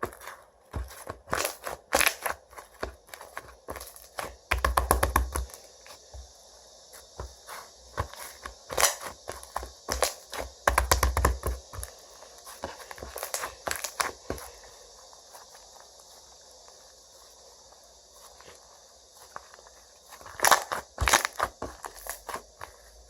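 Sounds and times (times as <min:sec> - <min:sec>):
slime squished by hand: 0:20.2 - 0:22.9.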